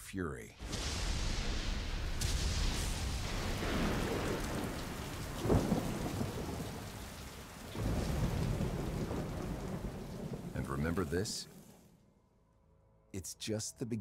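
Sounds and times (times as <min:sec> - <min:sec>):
low rumble of thunder: 0:00.6 - 0:11.7
sharp thunderclap: 0:00.6 - 0:11.7
heavy rain: 0:00.6 - 0:12.0.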